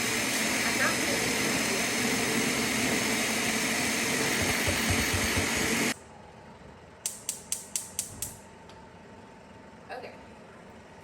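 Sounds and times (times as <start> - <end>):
blender running: 0.0 - 6.0
sharp taps: 4.4 - 5.5.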